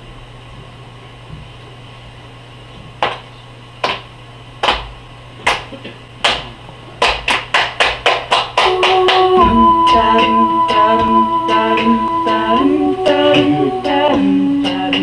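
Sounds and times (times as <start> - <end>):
sharp percussive hits: 7.1 - 14.2.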